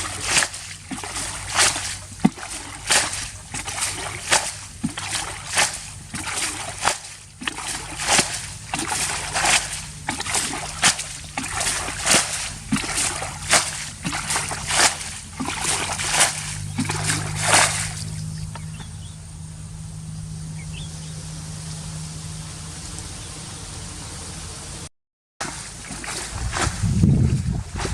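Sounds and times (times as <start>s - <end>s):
water splashing rhythmically: 0.0s - 19.2s, 25.4s - 27.9s
steady low hum: 0.0s - 27.9s.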